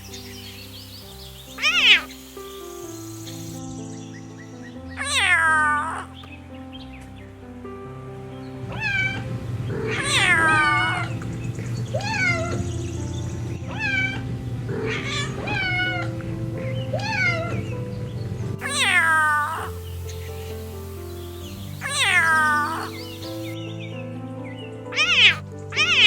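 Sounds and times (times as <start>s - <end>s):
background music: 0.0s - 26.0s
cat meowing: 1.6s - 2.1s, 13.7s - 14.2s, 18.6s - 19.7s, 21.8s - 23.0s, 24.9s - 26.0s.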